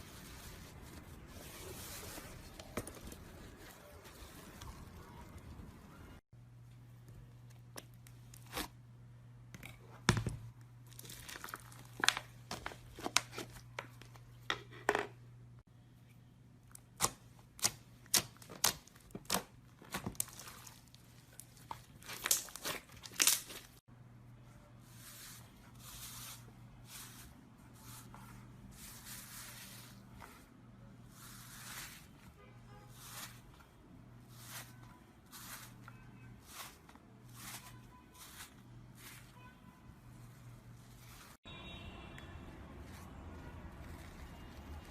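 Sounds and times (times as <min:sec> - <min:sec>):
slime squishing: 0:10.8 - 0:13.4, 0:16.7 - 0:23.8.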